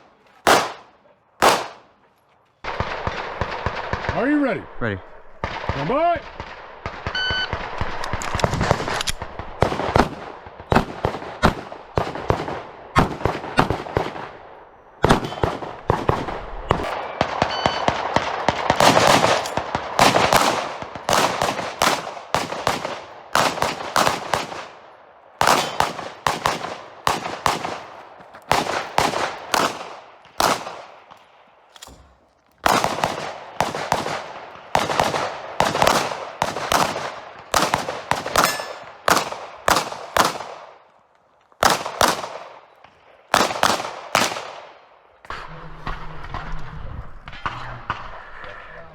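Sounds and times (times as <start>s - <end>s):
rapid pistol fire: 0.4s - 1.9s, 15.0s - 31.2s, 32.6s - 40.8s, 41.6s - 42.6s, 43.3s - 44.8s.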